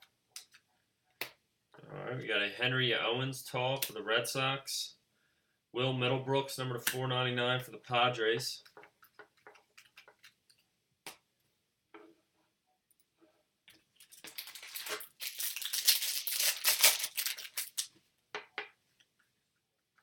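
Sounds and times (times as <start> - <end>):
wrapper crinkling and tearing: 14.0 - 17.9.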